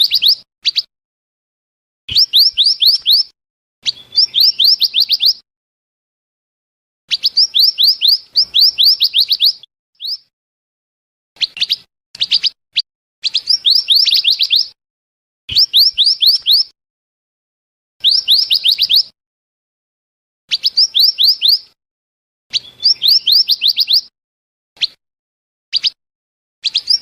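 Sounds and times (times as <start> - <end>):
high whistled bird call: 0.0 - 0.9, 2.1 - 5.4, 7.1 - 10.3, 11.4 - 14.8, 15.5 - 16.8, 18.0 - 19.2, 20.5 - 21.8, 22.5 - 24.1, 24.8 - 25.0, 25.7 - 26.0, 26.6 - 27.0.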